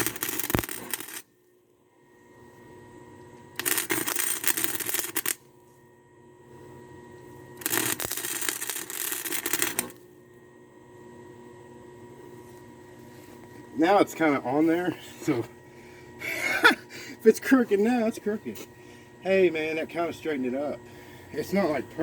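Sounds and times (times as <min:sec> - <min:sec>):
welding arc crackling: 0:00.0 - 0:01.2, 0:03.6 - 0:05.4, 0:07.6 - 0:10.0
low steady hum: 0:00.0 - 0:22.0.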